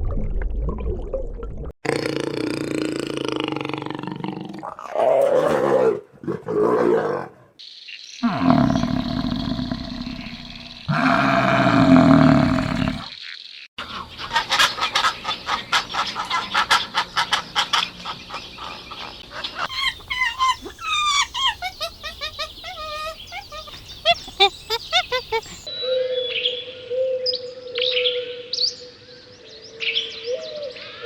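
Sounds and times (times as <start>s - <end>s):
bird clucking calls: 14.0s - 25.7s
loud bird call: 19.6s - 25.7s.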